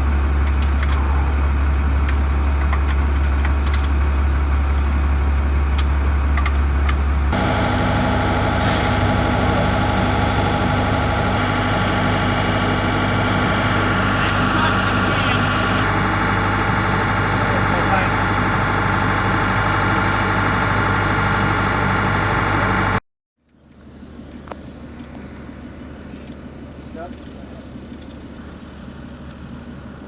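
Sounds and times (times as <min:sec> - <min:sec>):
engine idling: 0:00.0 - 0:23.0.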